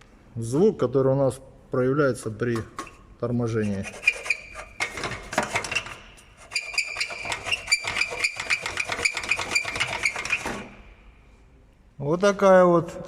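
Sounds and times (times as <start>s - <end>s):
creaking squeal from car: 5.7s - 10.5s.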